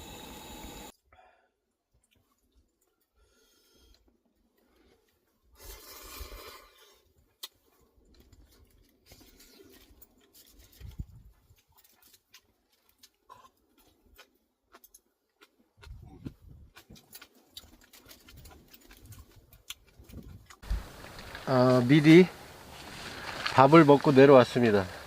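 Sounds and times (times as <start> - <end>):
faint rustling: 20.6 - 25.0.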